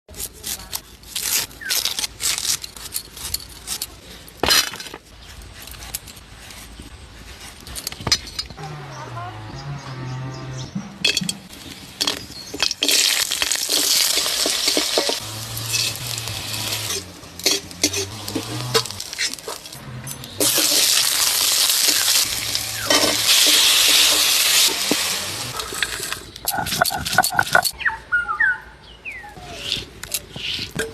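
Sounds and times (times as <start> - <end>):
kitchenware clinking: 11.0 - 16.1
utensil scraping a pan: 11.1 - 27.7
food sizzling in hot oil: 11.5 - 19.7, 20.4 - 26.2.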